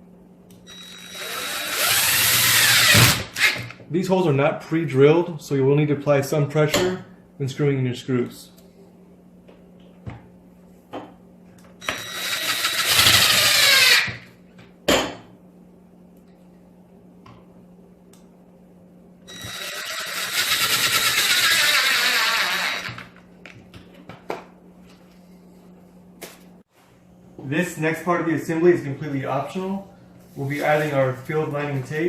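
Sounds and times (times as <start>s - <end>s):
power drill driving screws: 0.7s - 3.8s, 11.8s - 14.2s, 19.3s - 23.2s.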